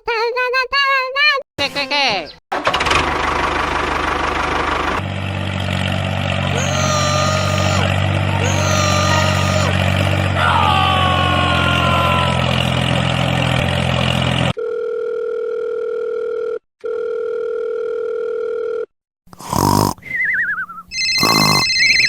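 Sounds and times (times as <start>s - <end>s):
engine running: 2.6s - 14.6s
phone ringing: 14.6s - 18.9s, 20.9s - 22.0s
telephone dial tone: 14.6s - 18.9s, 20.9s - 22.0s.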